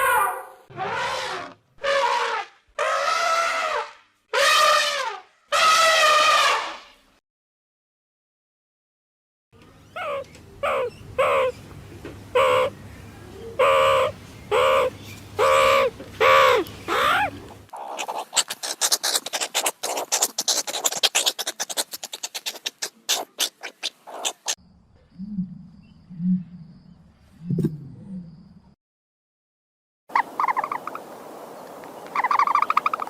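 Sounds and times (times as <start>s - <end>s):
fast clicking chatter: 17.9s - 24.6s.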